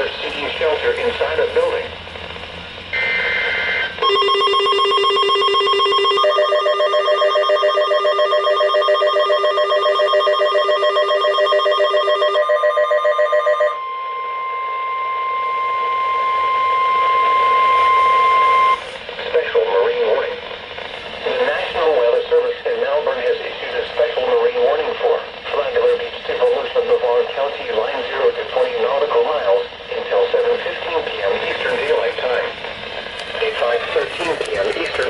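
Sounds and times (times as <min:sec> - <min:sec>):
pulsing electronic alarm: 0:02.9 - 0:19.0
steady warning alarm tone: 0:02.9 - 0:19.0
data-tone burst: 0:03.0 - 0:18.9.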